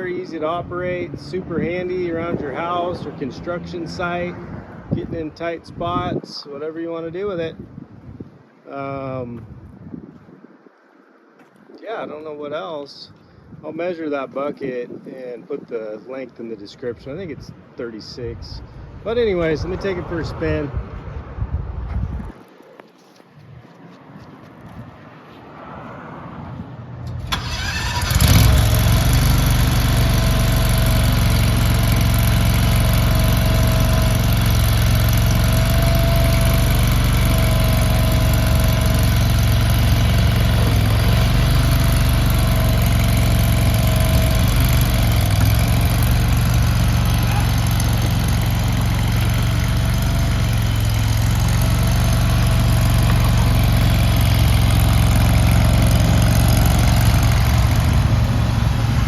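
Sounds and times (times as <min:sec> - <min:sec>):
skid steer gas engine running: 0:27.1 - 0:59.0.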